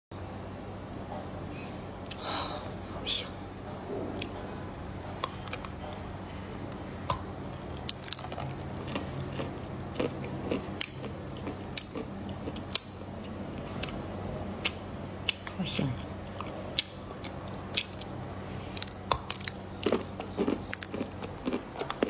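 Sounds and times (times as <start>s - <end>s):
chocolate crunching while chewed: 5.1s - 14.0s, 14.6s - 22.0s.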